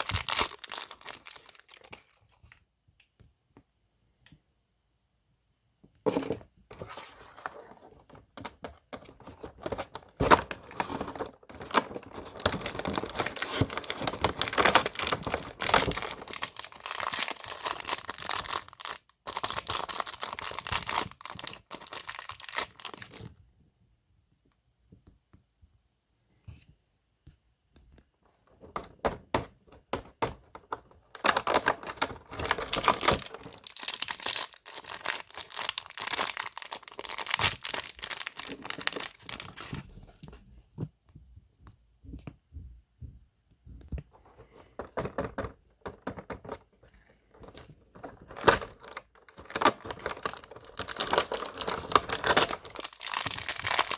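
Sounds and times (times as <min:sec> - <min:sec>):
packaging crinkling and tearing: 0:00.0 - 0:02.4, 0:09.0 - 0:23.3, 0:31.0 - 0:39.9, 0:47.4 - 0:53.9.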